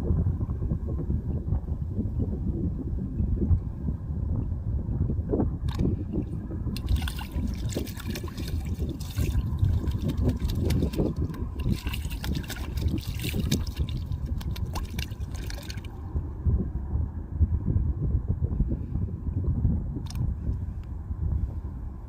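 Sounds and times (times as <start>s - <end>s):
wind rumbling on microphone: 0.0s - 22.0s
bird splashing in shallow water: 6.8s - 16.0s.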